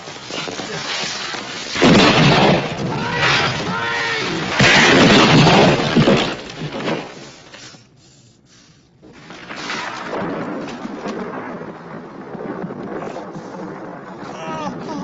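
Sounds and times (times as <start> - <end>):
crashing with glass shattering: 0.0 - 7.2.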